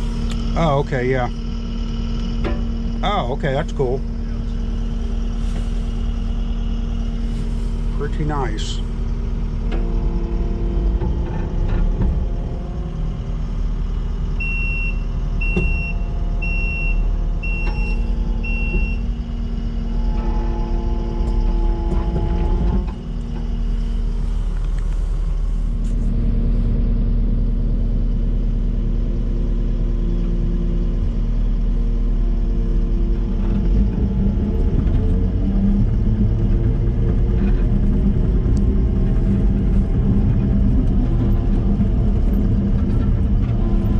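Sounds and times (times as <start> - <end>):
diesel engine running: 0.0 - 43.9
backup alarm beeping: 14.4 - 19.2.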